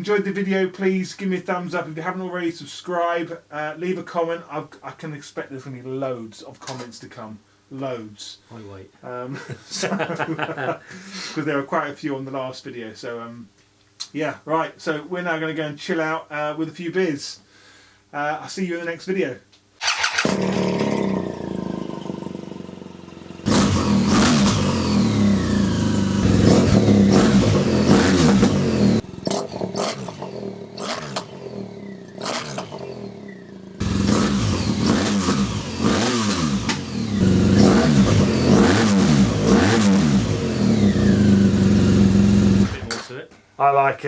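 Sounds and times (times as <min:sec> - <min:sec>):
motorcycle engine revving: 0:19.8 - 0:42.9.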